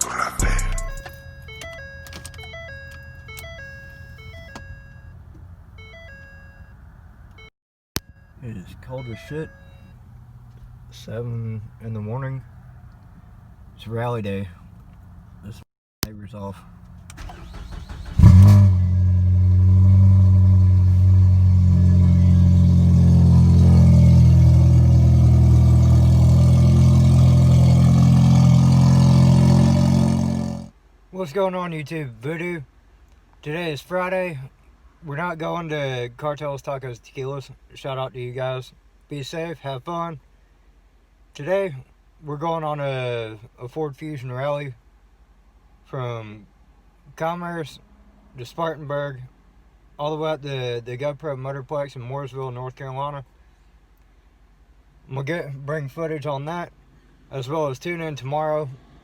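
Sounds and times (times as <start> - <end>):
car engine starting and idling: 0.0 - 7.4, 8.0 - 15.6, 16.4 - 30.7
simple electronic tune: 0.4 - 5.1.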